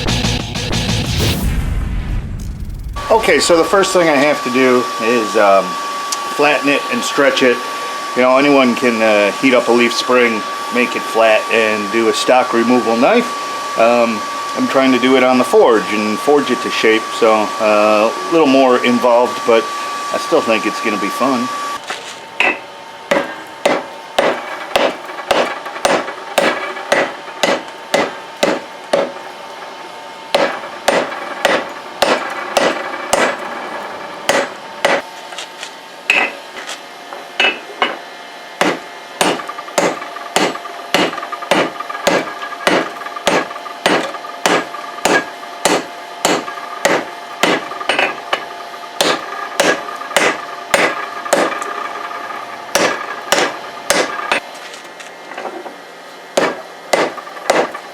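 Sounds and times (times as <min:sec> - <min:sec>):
hammer striking steel on anvil: 0:22.4 - 0:29.2, 0:30.3 - 0:33.4, 0:34.3 - 0:35.0, 0:36.1 - 0:36.4, 0:37.4 - 0:38.0, 0:38.6 - 0:51.9, 0:52.7 - 0:54.4, 0:56.4 - 0:57.8
anvil ringing: 0:36.1 - 0:36.4, 0:38.6 - 0:54.4.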